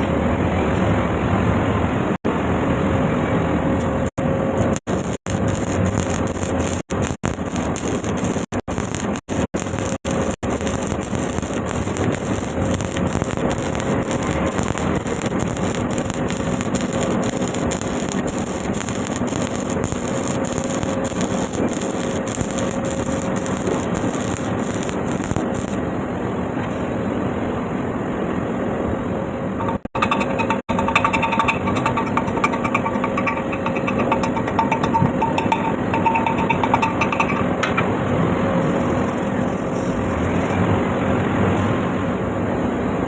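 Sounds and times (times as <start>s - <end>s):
welding arc crackling: 4.4s - 25.8s, 29.6s - 37.5s, 38.6s - 40.6s.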